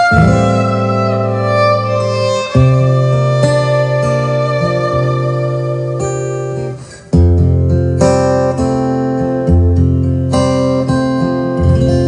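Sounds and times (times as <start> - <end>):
bass line: 0.0 - 2.2
strummed acoustic guitar: 0.0 - 12.0.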